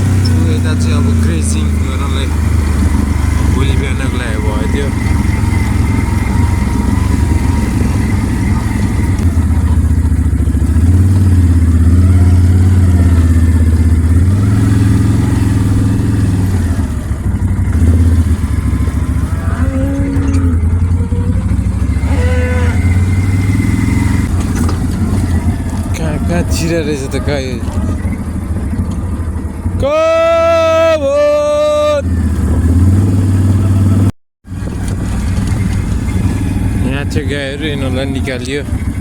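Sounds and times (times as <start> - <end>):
small vehicle engine running: 0.0 - 39.0.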